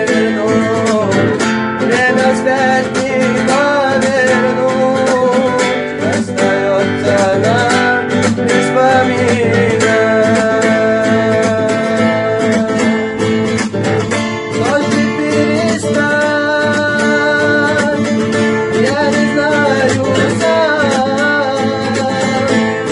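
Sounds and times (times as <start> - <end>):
plucked acoustic guitar: 0.0 - 22.9.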